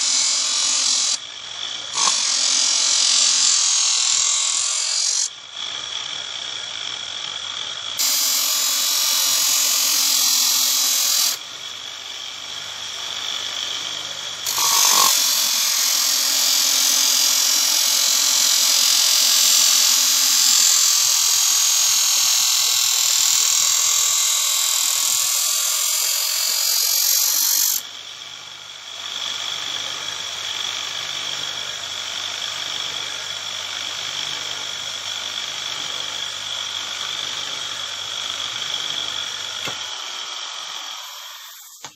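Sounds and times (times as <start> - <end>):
sharpening machine motor humming: 0.0 - 27.8, 35.3 - 41.9
knife blade grinding on abrasive: 2.0 - 3.8, 8.0 - 11.4, 14.4 - 17.6, 41.0 - 41.9.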